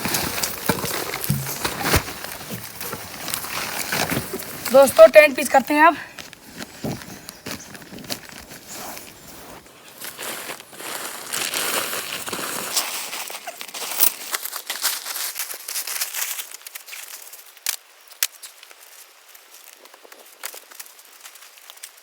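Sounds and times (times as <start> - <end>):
tent fabric rustling: 0.0 - 17.2.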